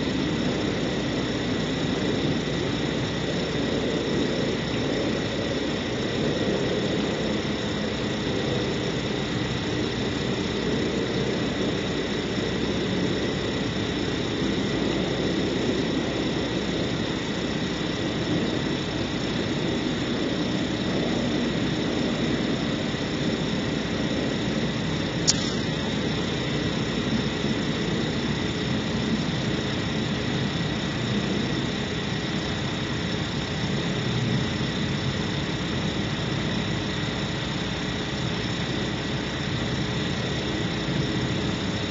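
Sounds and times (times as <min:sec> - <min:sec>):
high electronic whine: 0:24.7 - 0:28.8
sharp click: 0:25.2 - 0:25.7.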